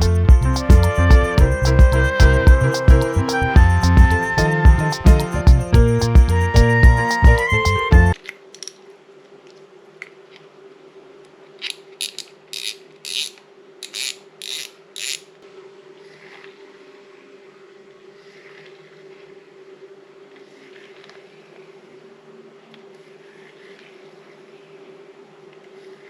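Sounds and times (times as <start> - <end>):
fishing reel mechanical bursts: 12.0 - 15.3.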